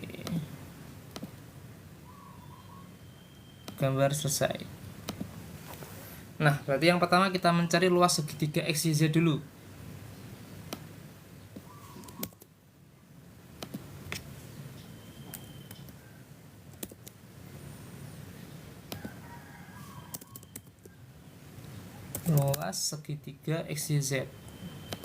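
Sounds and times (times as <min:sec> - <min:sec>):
keyboard and mouse clicks: 0:01.1 - 0:01.4, 0:05.0 - 0:05.3, 0:11.5 - 0:12.5, 0:13.6 - 0:14.3, 0:15.3 - 0:16.0, 0:16.7 - 0:17.2, 0:18.9 - 0:19.2, 0:20.1 - 0:21.0, 0:22.1 - 0:22.7
faint bird chirps: 0:02.0 - 0:04.3, 0:11.6 - 0:12.4, 0:14.5 - 0:16.3, 0:17.6 - 0:22.5, 0:24.1 - 0:25.0.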